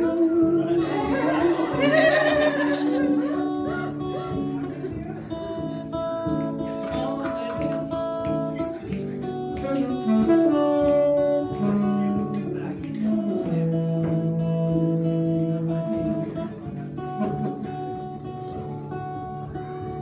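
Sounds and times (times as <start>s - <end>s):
acoustic guitar strumming: 0.0s - 20.0s
long held melody notes: 8.7s - 17.7s.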